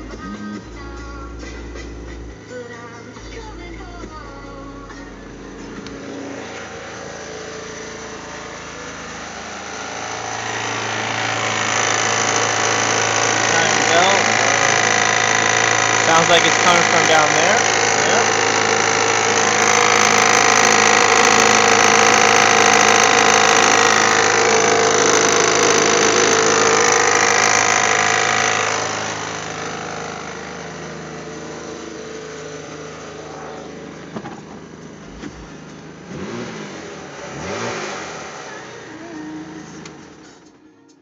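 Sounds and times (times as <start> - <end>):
car engine running: 0.0 - 41.0
engine revving blips: 5.2 - 40.6.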